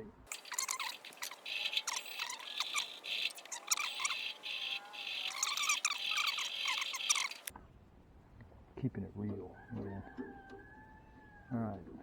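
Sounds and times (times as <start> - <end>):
high insect trilling: 0.3 - 7.5
short bird-like chirps: 0.3 - 7.5.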